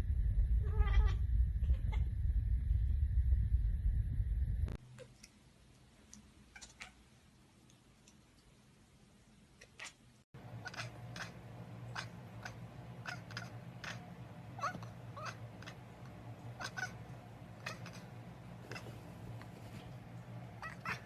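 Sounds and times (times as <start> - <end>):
low hum: 0.0 - 4.8.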